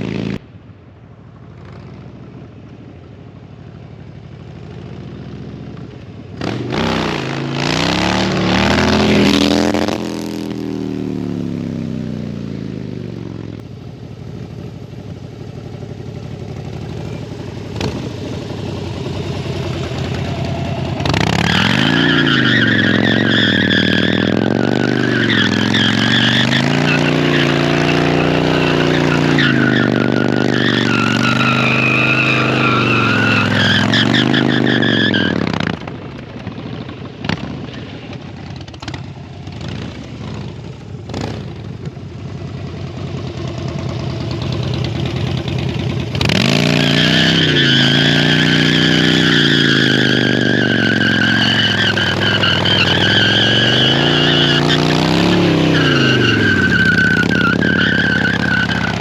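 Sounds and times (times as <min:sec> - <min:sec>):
motorcycle engine revving: 0:04.4 - 0:59.0
tyre squealing: 0:17.8 - 0:35.6, 0:46.2 - 0:59.0.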